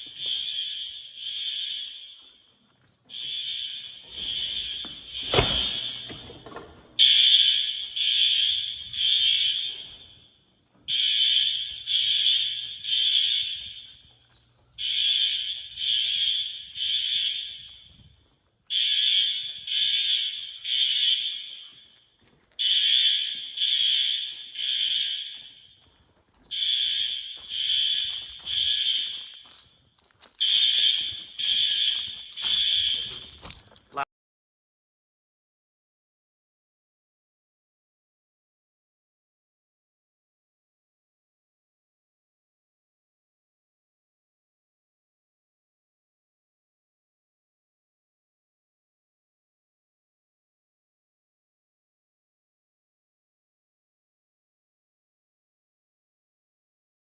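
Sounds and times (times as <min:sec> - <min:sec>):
fire alarm horns pulsing: 0:00.0 - 0:29.7, 0:30.3 - 0:33.6.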